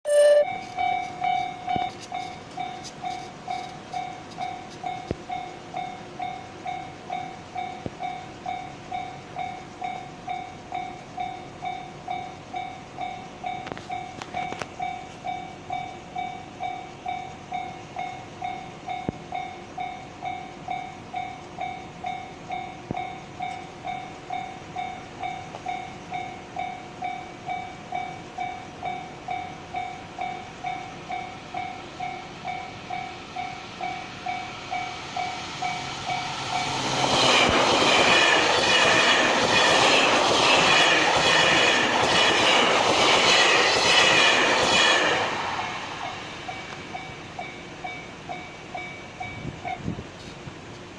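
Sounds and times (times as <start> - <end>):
level crossing warning bell: 0.0 - 36.9, 46.4 - 49.9.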